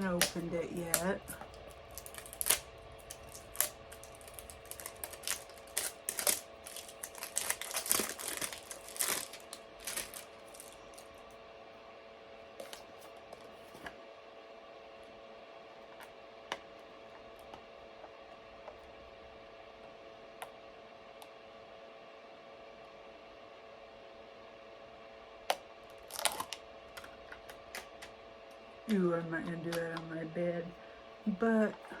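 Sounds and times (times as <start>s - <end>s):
plastic packaging crackling and clicking: 0.0s - 11.3s, 12.6s - 13.1s, 25.5s - 28.1s.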